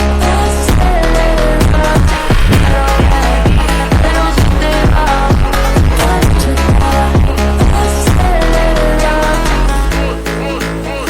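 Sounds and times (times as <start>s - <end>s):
deep bass: 0.0s - 11.0s
electronic dance music: 0.7s - 11.0s
sustained synth notes: 1.3s - 11.0s
steady kick drum: 1.6s - 8.7s.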